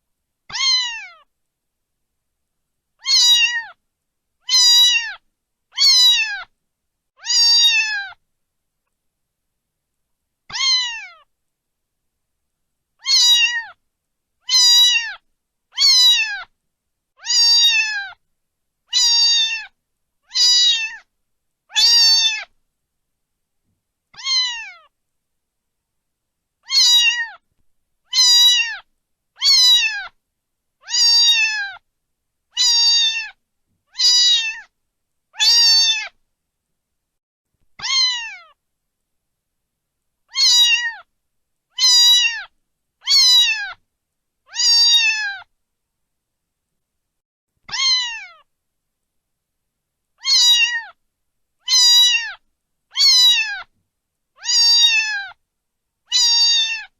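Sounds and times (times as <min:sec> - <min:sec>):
cat meowing: 0:00.5 - 0:01.3, 0:03.0 - 0:03.8, 0:04.4 - 0:06.5, 0:07.2 - 0:08.2, 0:10.5 - 0:11.3, 0:13.0 - 0:13.8, 0:14.4 - 0:16.5, 0:17.2 - 0:18.2, 0:18.9 - 0:21.1, 0:21.7 - 0:22.5, 0:24.2 - 0:24.9, 0:26.6 - 0:27.4, 0:28.1 - 0:30.2, 0:30.8 - 0:31.8, 0:32.5 - 0:34.7, 0:35.4 - 0:36.2, 0:37.8 - 0:38.6, 0:40.3 - 0:41.1, 0:41.7 - 0:43.8, 0:44.5 - 0:45.5, 0:47.6 - 0:48.5, 0:50.2 - 0:51.0, 0:51.6 - 0:53.7, 0:54.4 - 0:55.4, 0:56.1 - 0:56.9.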